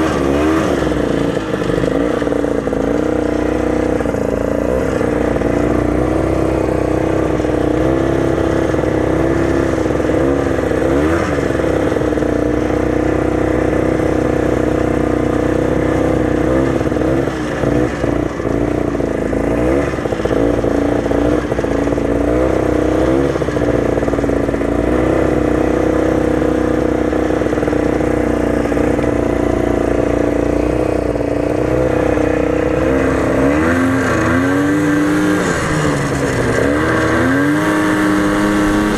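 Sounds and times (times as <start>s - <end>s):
snowmobile engine running: 0.0s - 38.9s.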